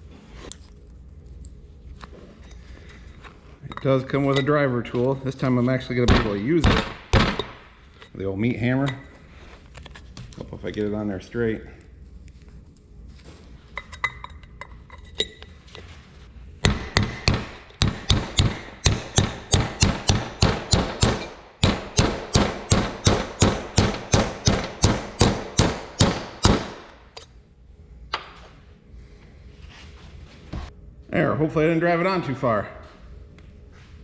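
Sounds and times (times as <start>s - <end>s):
hammer striking steel tool: 16.6s - 27.3s.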